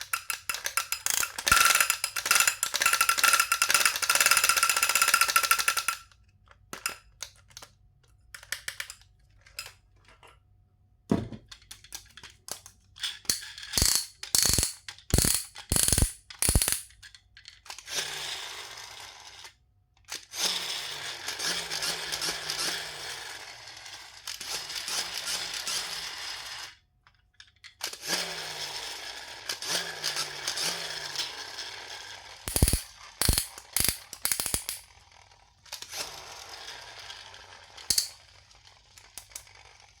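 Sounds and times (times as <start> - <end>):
ratchet-like rattling: 0.0 - 6.0, 13.3 - 16.9, 32.5 - 34.8
plastic toys clicking and knocking: 0.0 - 10.5, 11.2 - 17.9, 27.0 - 28.2, 32.4 - 40.0.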